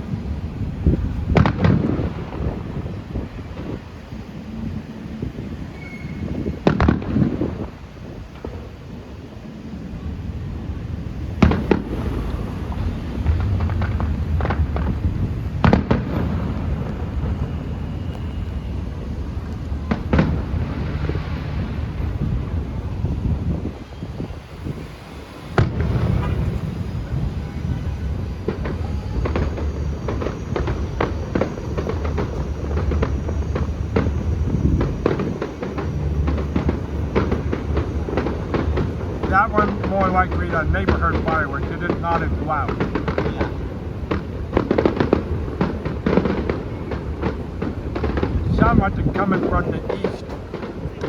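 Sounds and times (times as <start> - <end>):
fireworks bangs: 0.0 - 51.0
fireworks crackles: 0.0 - 51.0
steady low rumble: 6.4 - 51.0
low rumble: 10.6 - 24.8.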